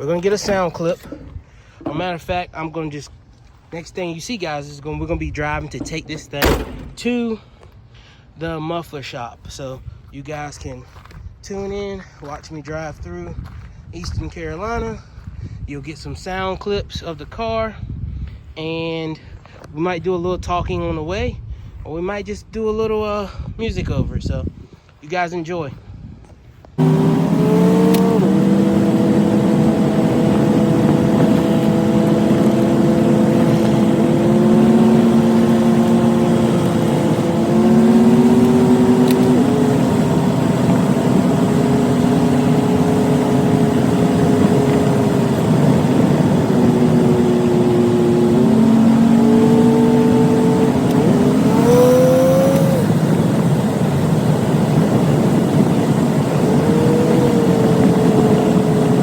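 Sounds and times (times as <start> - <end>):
car engine accelerating: 5.7 - 7.1, 26.8 - 59.0.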